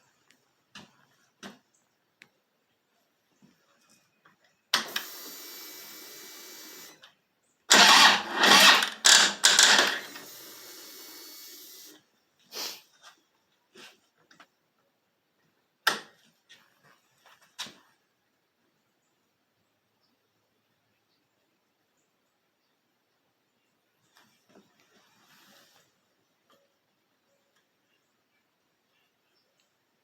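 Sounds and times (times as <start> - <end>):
engine cranking slowly: 7.7 - 11.4
starter motor whirring: 7.7 - 11.9.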